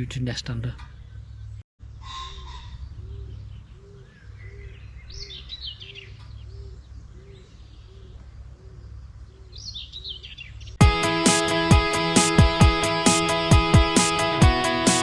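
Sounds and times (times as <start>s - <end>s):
birds chirping and singing: 0.7s - 1.6s, 2.2s - 10.8s.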